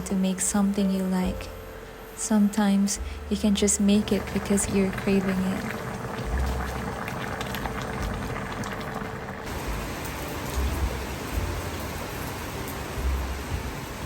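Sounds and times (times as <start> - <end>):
low rumbles: 0.0 - 14.0
steady rain falling: 4.0 - 14.0.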